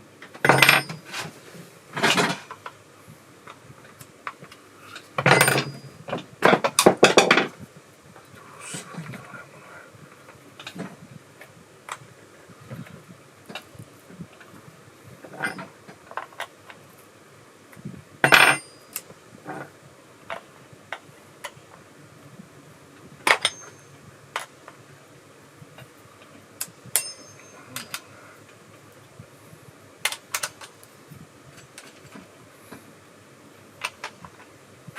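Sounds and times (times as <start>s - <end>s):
metal tools clinking and knocking: 0.4s - 1.2s, 5.2s - 7.5s, 15.3s - 16.2s, 18.2s - 19.0s, 23.3s - 23.9s, 27.0s - 28.1s.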